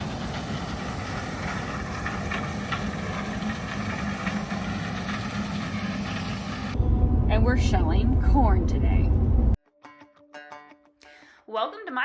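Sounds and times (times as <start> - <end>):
diesel engine running: 0.0 - 9.6.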